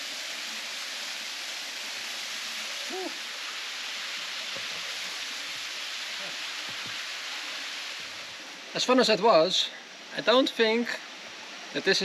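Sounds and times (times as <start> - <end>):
waterfall pouring into pool: 0.0 - 8.8.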